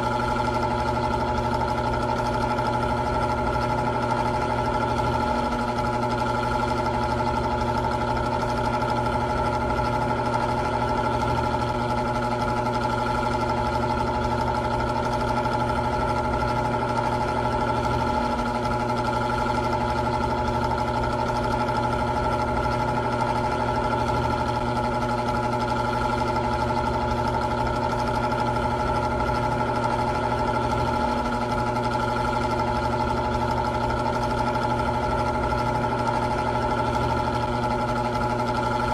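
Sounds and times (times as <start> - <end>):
electric fan running: 0.0 - 38.9.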